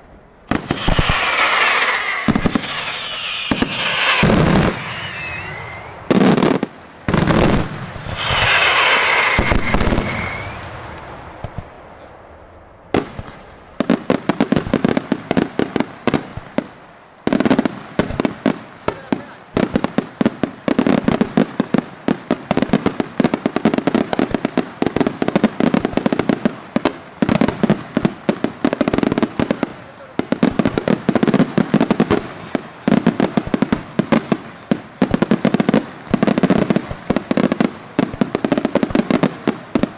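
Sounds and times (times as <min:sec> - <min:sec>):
rushing hiss of fireworks: 0:00.0 - 0:39.9
firework bangs: 0:00.4 - 0:39.9
firecrackers crackling rapidly: 0:00.5 - 0:12.2, 0:12.9 - 0:39.9.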